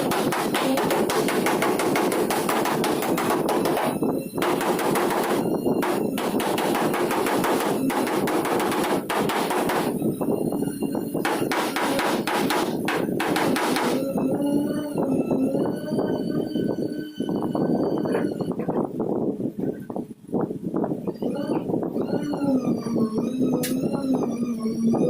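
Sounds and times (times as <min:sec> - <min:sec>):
hammering on sheet metal: 0:00.0 - 0:10.0, 0:11.2 - 0:14.2
steady pitched tone: 0:00.0 - 0:18.7.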